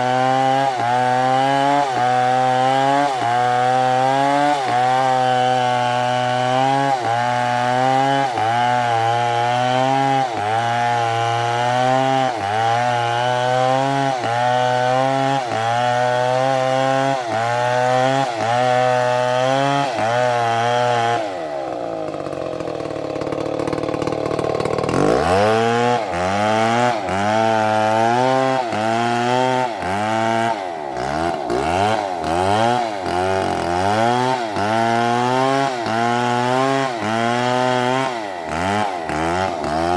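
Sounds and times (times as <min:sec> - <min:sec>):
chainsaw cutting at high revs: 0:00.0 - 0:39.9.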